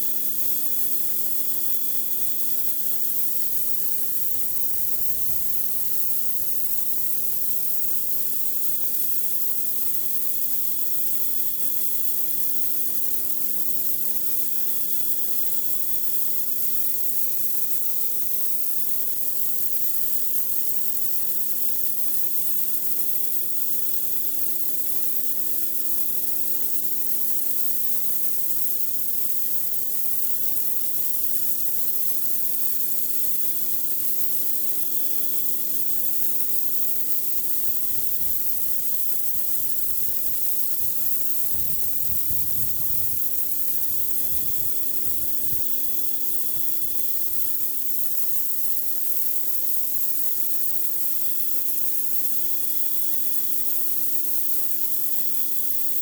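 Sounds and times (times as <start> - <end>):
water spray hissing on concrete: 34.9 - 50.4.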